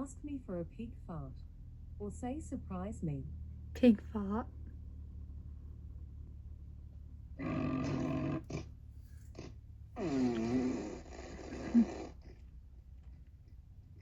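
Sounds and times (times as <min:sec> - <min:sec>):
pig grunts: 0:07.4 - 0:12.4
fart noises: 0:09.4 - 0:12.2.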